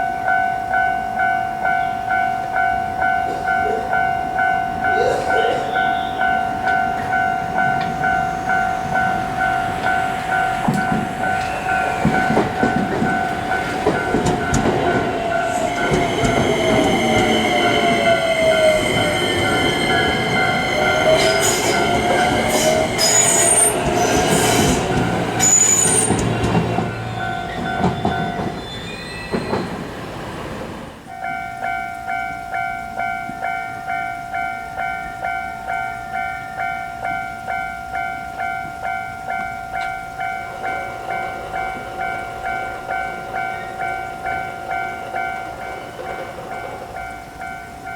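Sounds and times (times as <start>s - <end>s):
railroad crossing bell ringing: 0.0s - 29.7s, 31.1s - 47.9s
train wheel noise: 3.1s - 31.8s, 38.4s - 47.9s
high wheel squeals: 5.0s - 29.9s
train motor whine: 5.8s - 30.8s.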